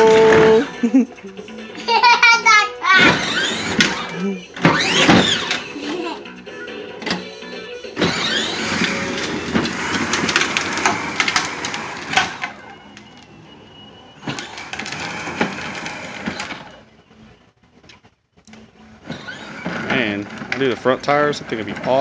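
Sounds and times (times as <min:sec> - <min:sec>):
toy car wheels rolling over ground: 0:08.1 - 0:13.4, 0:19.1 - 0:22.0.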